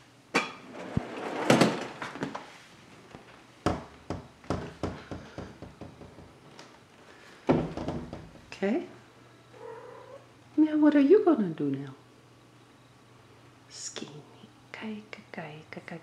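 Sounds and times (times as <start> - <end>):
cupboard door shutting: 7.5 - 8.4.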